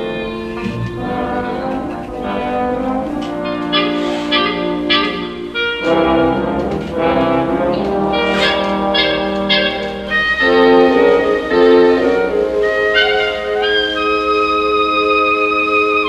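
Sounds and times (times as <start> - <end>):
orchestral music with brass chords: 0.0 - 16.0.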